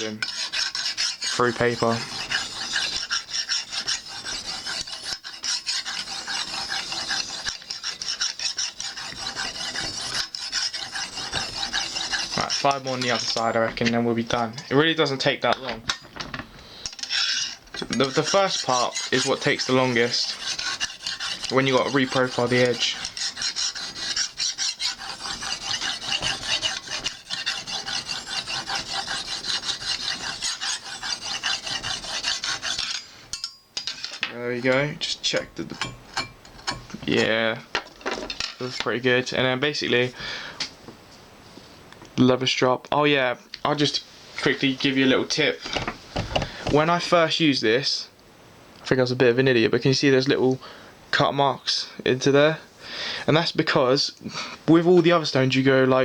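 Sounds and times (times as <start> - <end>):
hone scraping along knife edge: 0.0 - 14.0, 16.8 - 37.3, 45.6 - 46.8.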